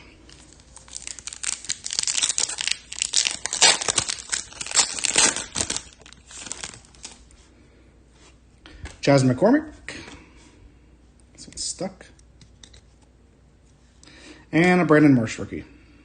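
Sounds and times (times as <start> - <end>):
card pack wrapper crinkling and tearing: 0.2 - 7.2.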